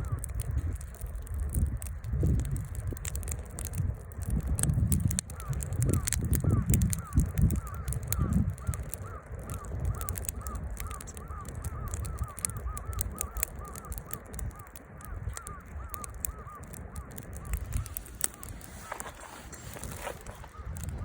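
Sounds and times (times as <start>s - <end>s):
firewood crackling and popping: 0.0s - 21.0s.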